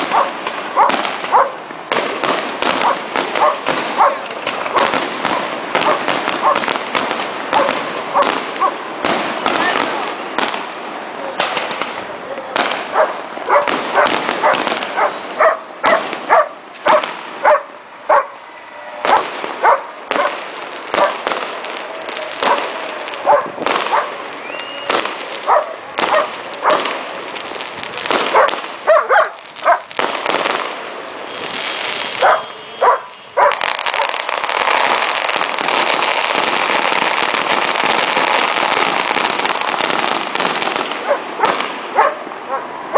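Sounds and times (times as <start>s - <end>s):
fireworks and firecrackers banging: 0.0s - 42.9s
dog barking: 0.1s - 1.6s, 2.8s - 4.9s, 5.8s - 6.7s, 7.5s - 8.8s, 12.9s - 18.4s, 19.1s - 21.2s, 22.4s - 22.6s, 23.2s - 24.2s, 25.4s - 26.8s, 28.3s - 29.9s, 32.2s - 34.2s, 41.0s - 41.2s, 41.9s - 42.7s.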